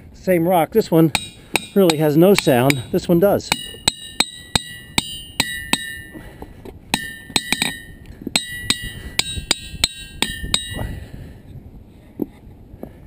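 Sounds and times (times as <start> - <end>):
hammer striking rock with ringing: 1.1 - 6.3, 6.9 - 11.0.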